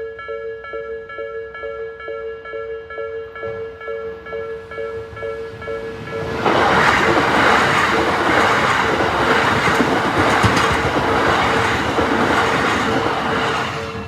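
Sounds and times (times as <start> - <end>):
level crossing warning bell: 0.0 - 14.0
train wheels rumbling and clattering: 5.0 - 14.0.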